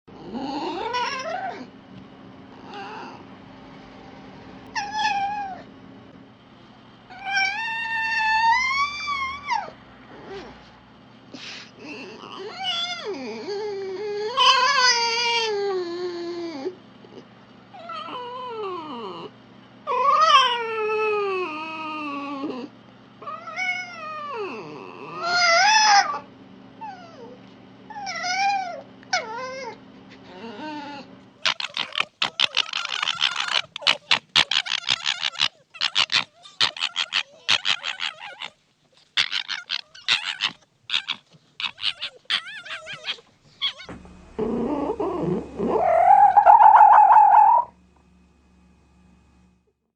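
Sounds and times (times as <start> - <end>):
faint steady hum: 0.1 - 49.9
fox whining calls: 0.3 - 1.7, 4.8 - 5.6, 30.4 - 47.8
fox stuttering chatter: 31.4 - 43.9, 44.5 - 47.7.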